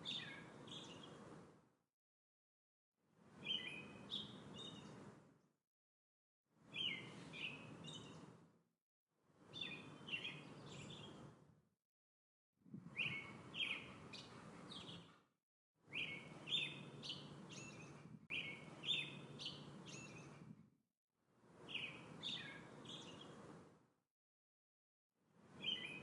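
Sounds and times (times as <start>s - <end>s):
songbird chirping: 0.0s - 1.3s, 3.4s - 5.2s, 6.7s - 8.4s, 9.5s - 11.4s, 12.9s - 15.2s, 15.9s - 20.5s, 21.6s - 23.5s, 25.6s - 26.0s.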